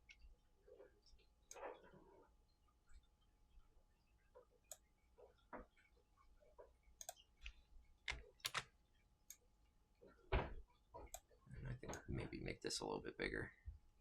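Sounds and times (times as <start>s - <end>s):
computer mouse clicks: 7.0s - 8.7s.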